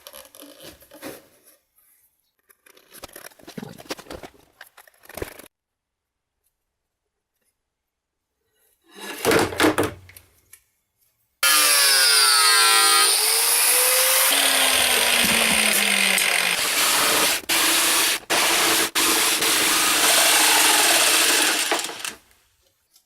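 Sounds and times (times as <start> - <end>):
power tool running: 11.4 - 22.2.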